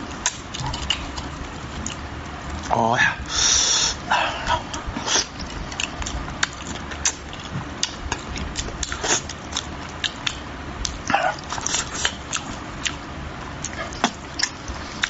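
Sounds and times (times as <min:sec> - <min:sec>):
chewing and sucking sounds: 0:05.0 - 0:13.0, 0:13.6 - 0:15.0.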